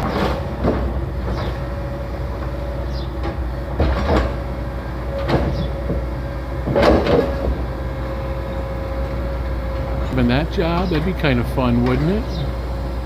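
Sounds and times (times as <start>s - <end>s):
train rolling rumble and hum: 0.0s - 13.0s
loud clunk: 3.2s - 4.4s, 5.1s - 7.7s.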